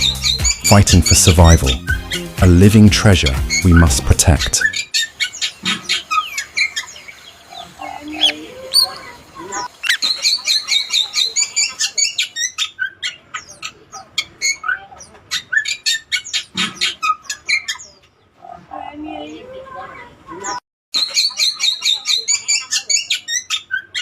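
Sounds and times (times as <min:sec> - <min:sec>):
myna chirps and whistles: 0:00.0 - 0:00.7.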